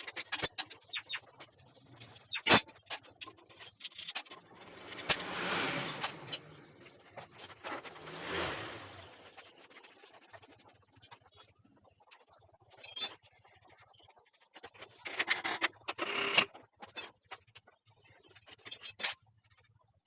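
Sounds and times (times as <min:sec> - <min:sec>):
tools scraping metal parts: 0:00.0 - 0:01.3, 0:02.0 - 0:08.0, 0:14.9 - 0:17.1, 0:18.5 - 0:19.2.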